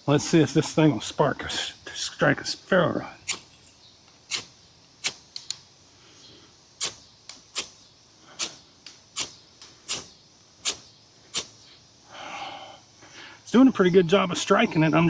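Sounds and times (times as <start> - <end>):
knife scraping ferrocerium rod: 9.9 - 10.8.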